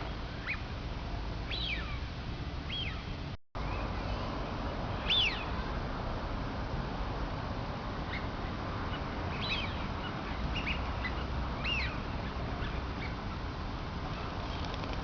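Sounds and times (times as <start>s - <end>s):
steady background hiss: 0.0s - 15.0s
ducks whistling calls: 8.9s - 13.2s.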